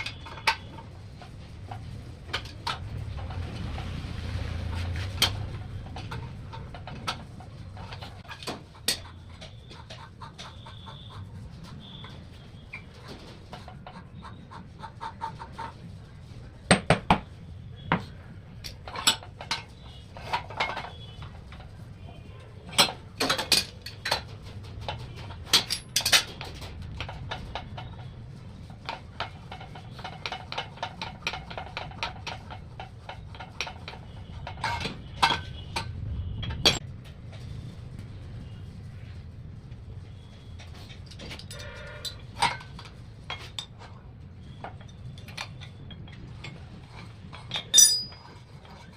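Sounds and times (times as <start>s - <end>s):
metal tools clinking: 44.6s - 48.9s.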